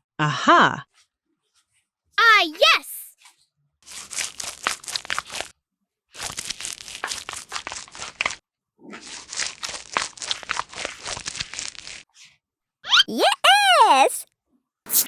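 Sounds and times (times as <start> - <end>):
crisp crunching and crinkling: 4.0 - 5.5.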